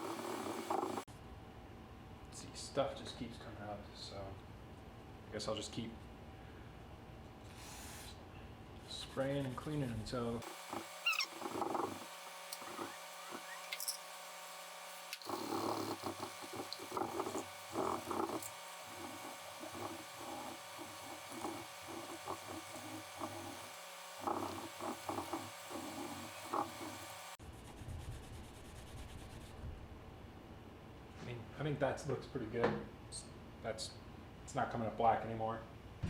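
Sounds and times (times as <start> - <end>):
scrubbing metal by hand: 10.5 - 27.3.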